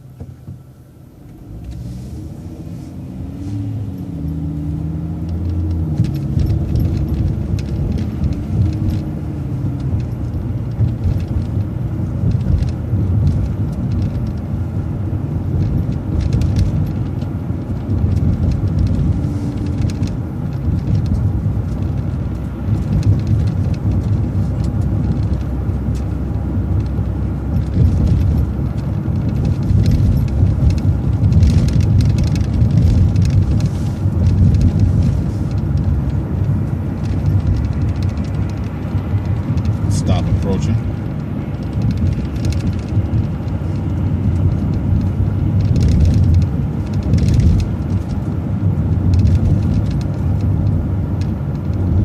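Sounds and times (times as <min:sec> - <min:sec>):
bus engine and road rumble: 0:00.0 - 0:52.0
engine tone rising and falling: 0:01.2 - 0:10.0.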